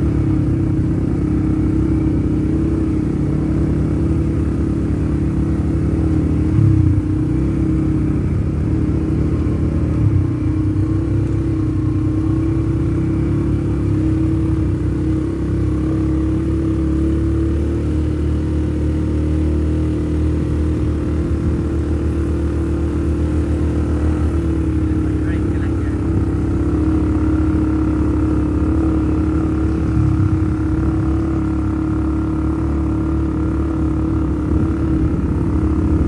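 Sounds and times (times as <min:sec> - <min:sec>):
atv engine running: 0:00.0 - 0:36.0
vehicle jolt: 0:21.0 - 0:32.7.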